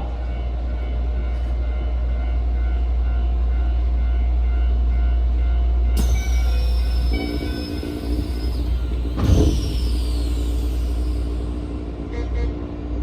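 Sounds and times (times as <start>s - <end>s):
electric train rumbling: 0.0s - 13.0s
hiss with falling high tone: 6.0s - 12.0s
train motor whine: 6.0s - 13.0s.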